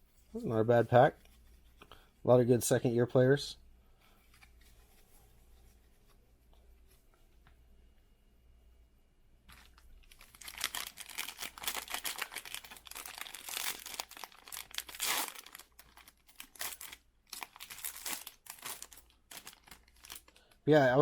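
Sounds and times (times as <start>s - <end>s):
foil wrapper crinkling and tearing: 9.6s - 20.6s.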